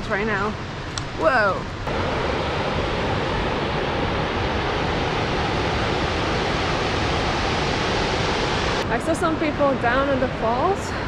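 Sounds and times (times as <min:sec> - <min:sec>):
waterfall rushing: 0:01.9 - 0:09.4.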